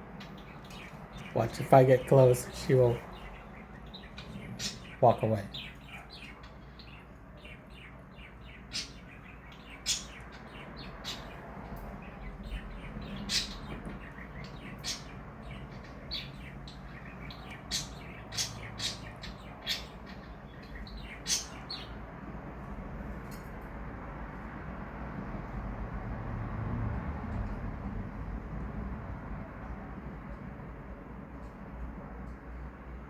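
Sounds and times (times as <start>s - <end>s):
bird chirping: 0.0s - 22.4s
faint room hum: 0.0s - 33.0s.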